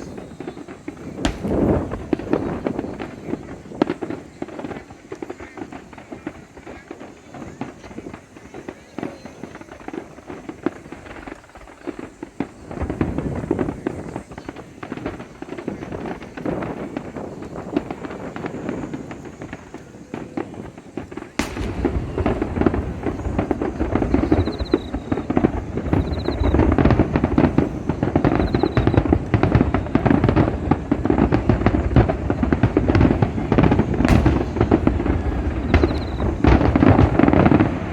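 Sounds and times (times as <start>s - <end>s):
fireworks bangs and crackling: 0.0s - 37.9s.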